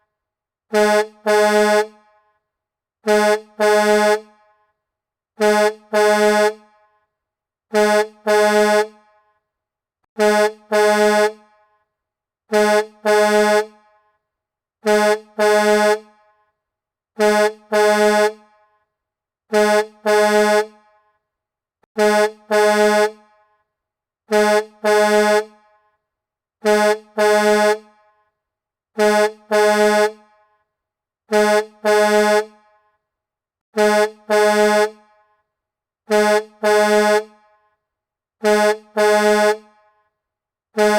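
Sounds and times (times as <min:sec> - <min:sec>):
truck air horn honking: 0:00.7 - 0:02.0, 0:03.0 - 0:04.4, 0:05.4 - 0:06.7, 0:07.7 - 0:09.0, 0:10.2 - 0:11.5, 0:12.5 - 0:13.8, 0:14.8 - 0:16.1, 0:17.2 - 0:18.5, 0:19.5 - 0:20.8, 0:22.0 - 0:23.2, 0:24.3 - 0:25.6, 0:26.6 - 0:27.9, 0:29.0 - 0:30.3, 0:31.3 - 0:32.6, 0:33.8 - 0:35.0, 0:36.1 - 0:37.4, 0:38.4 - 0:39.7.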